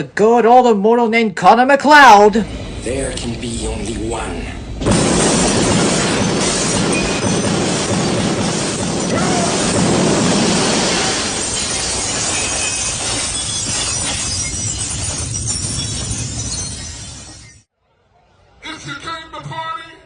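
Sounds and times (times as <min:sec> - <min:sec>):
loud continuous crashing: 0:04.8 - 0:17.6.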